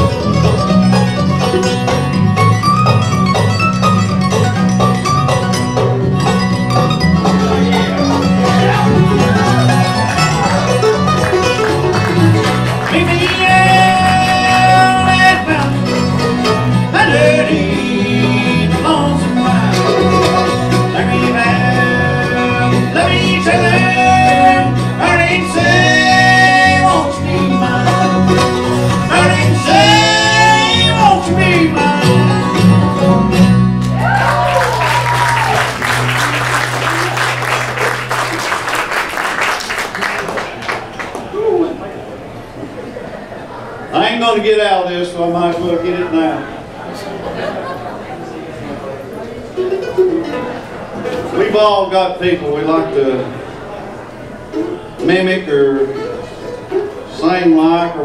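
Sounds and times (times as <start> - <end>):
bluegrass band playing: 0.0 - 58.0
person singing: 12.6 - 16.0, 16.7 - 32.7.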